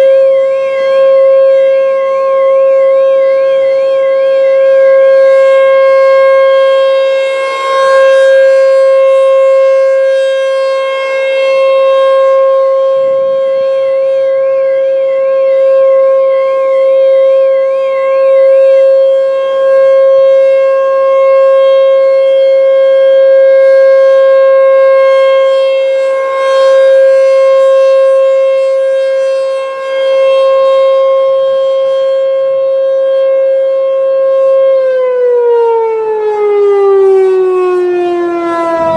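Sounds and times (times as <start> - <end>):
electromechanical siren steady tone: 0.0 - 38.9
car alarm warble: 36.4 - 38.9.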